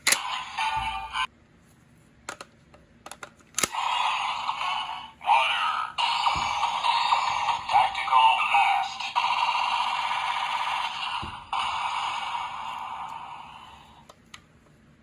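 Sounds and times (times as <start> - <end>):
toy gun plastic clicks: 3.1 - 3.9
toy electronic sound effects: 3.7 - 13.9.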